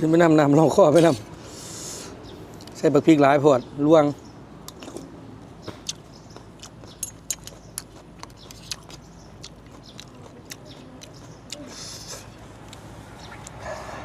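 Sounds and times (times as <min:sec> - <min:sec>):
mouth clicks and smacks: 0:05.7 - 0:13.6.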